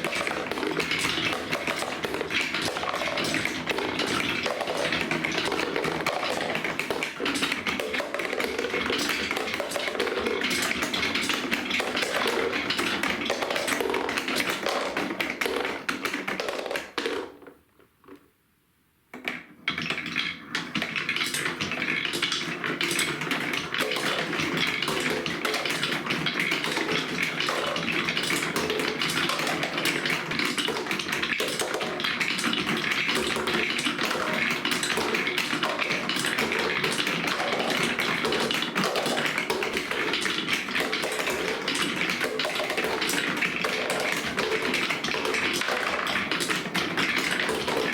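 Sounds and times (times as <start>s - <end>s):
marbles clattering on plastic track: 0.0s - 17.5s, 19.2s - 47.9s.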